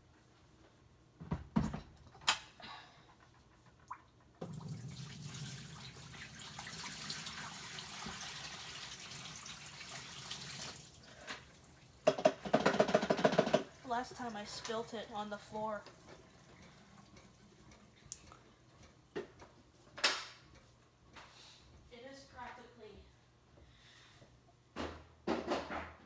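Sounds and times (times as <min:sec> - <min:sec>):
water splashing into a sink: 0:03.8 - 0:17.4
knocks: 0:12.0 - 0:13.7.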